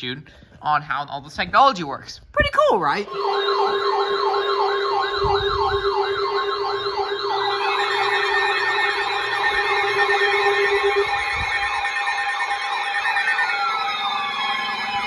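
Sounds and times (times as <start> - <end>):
electronic siren yelping: 2.4 - 15.0
steady low tone: 3.0 - 12.6.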